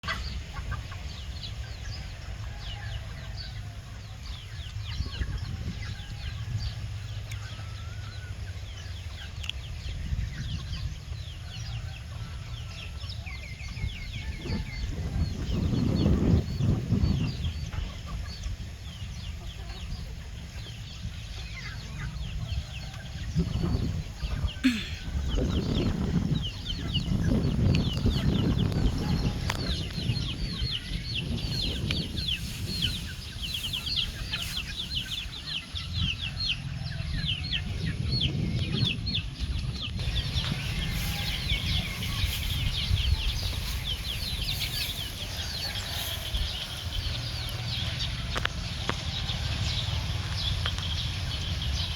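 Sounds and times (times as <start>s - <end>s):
chicks peeping: 0.0s - 51.9s
low rumbling noise: 34.8s - 51.9s.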